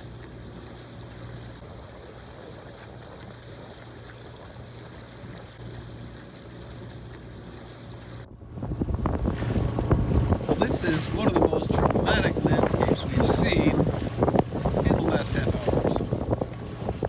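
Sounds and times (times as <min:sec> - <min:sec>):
boat engine hum: 0:00.0 - 0:17.0
wind buffeting microphone: 0:08.0 - 0:17.0.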